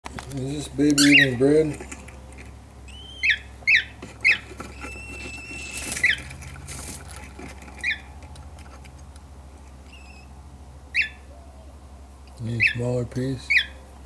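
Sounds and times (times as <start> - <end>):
cockatiel chick chirping: 0.9 - 1.4, 2.9 - 6.2, 10.9 - 11.3, 13.5 - 13.8
soft rustle: 4.0 - 7.8.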